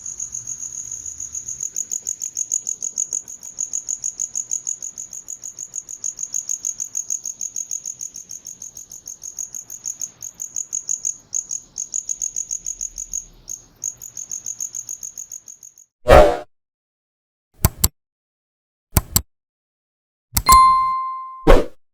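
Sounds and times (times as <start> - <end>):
cricket chirping: 0.0 - 15.9.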